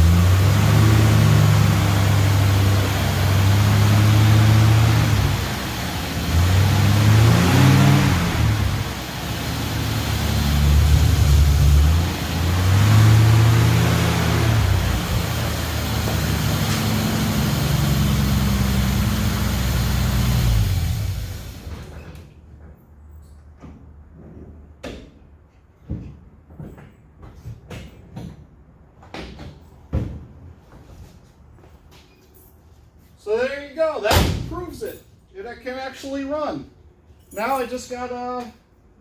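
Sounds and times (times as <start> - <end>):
truck engine revving: 0.0 - 21.9.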